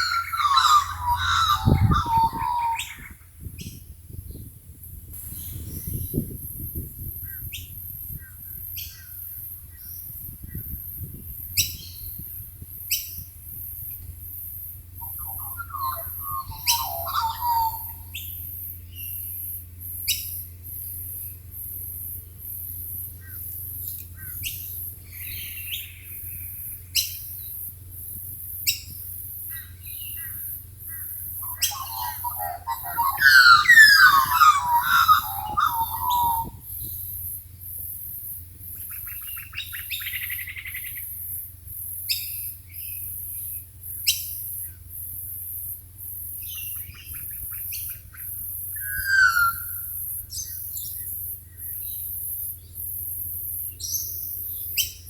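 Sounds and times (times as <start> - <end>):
birds calling: 0.0 - 3.8, 14.2 - 37.9, 46.3 - 52.8
high pulsing insect chirp: 0.0 - 4.4, 5.2 - 55.0
bird warbling song: 0.0 - 4.5, 15.0 - 19.4, 28.6 - 37.2, 46.4 - 52.0.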